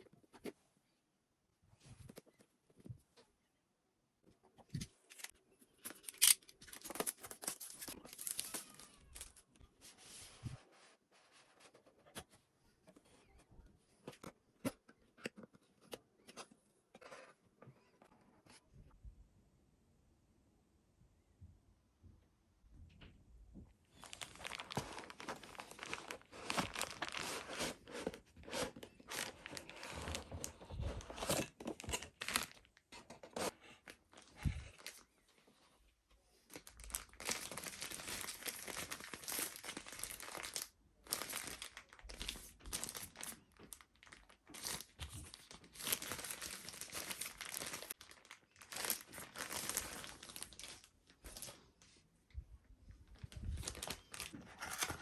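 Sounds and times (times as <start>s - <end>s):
packaging being torn and crinkled: 5.2s - 9.4s, 24.0s - 27.8s, 36.5s - 51.5s, 53.6s - 55.0s.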